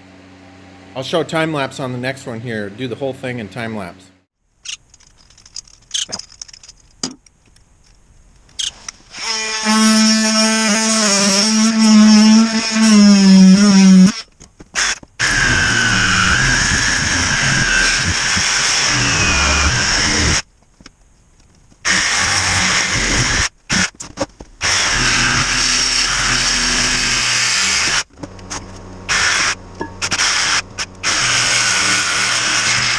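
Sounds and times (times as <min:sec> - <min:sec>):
power saw cutting tire: 0:08.6 - 0:20.5, 0:21.8 - 0:32.9.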